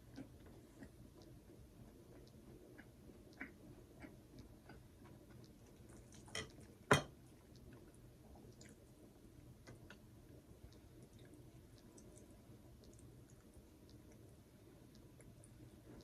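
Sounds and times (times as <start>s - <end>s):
chewing and mouth clicks: 0.0s - 9.0s, 9.6s - 16.0s
taps on a plate: 6.3s - 7.1s.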